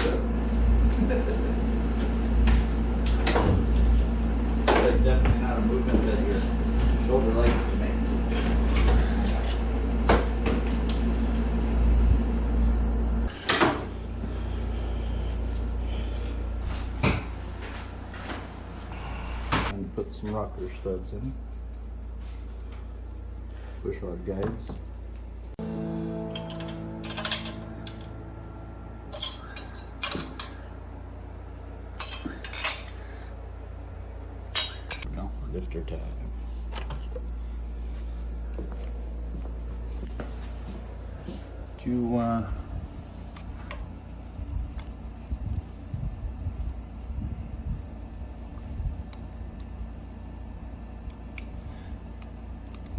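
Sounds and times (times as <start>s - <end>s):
steady low hum: 0.0s - 52.9s
tools and engine parts clicking: 19.3s - 23.7s, 24.3s - 25.6s, 29.1s - 30.7s, 32.0s - 33.0s, 34.5s - 35.1s, 39.5s - 46.8s, 52.2s - 52.9s.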